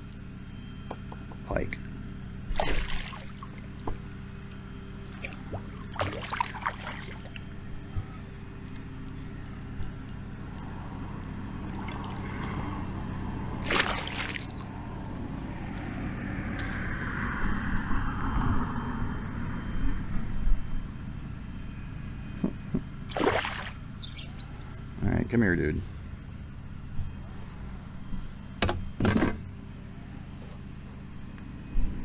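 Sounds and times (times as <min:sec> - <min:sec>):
fish thrashing in water: 0:02.6 - 0:03.9, 0:05.1 - 0:07.7, 0:11.6 - 0:12.6, 0:13.6 - 0:15.0, 0:23.1 - 0:24.5.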